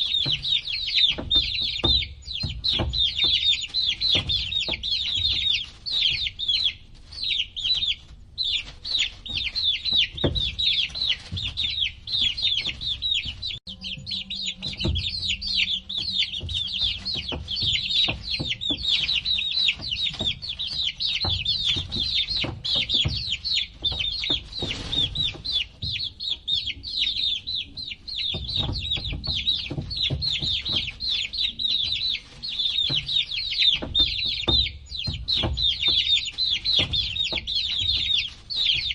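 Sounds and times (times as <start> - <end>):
low bumps and knocks: 0.0 - 6.4, 9.1 - 27.1, 27.8 - 38.9
baby chicks peeping: 0.0 - 38.9.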